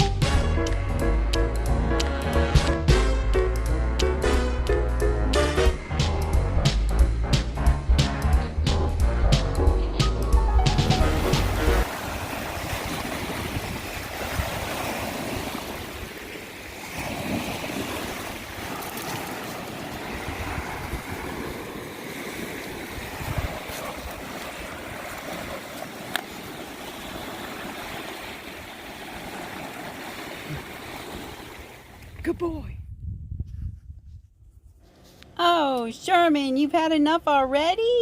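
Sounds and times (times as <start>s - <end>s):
strong wind: 9.6s - 34.9s
lake waves washing onto shore: 10.7s - 32.2s.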